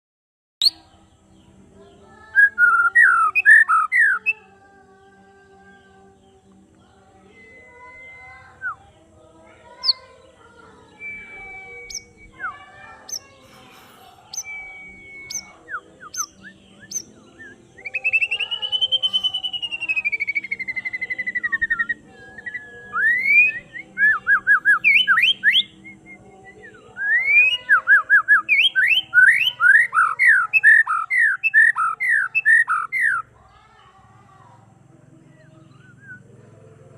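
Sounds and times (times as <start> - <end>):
bird singing whistles: 2.3 - 4.4, 7.2 - 8.9, 9.8 - 10.1, 10.9 - 33.3, 35.5 - 36.3.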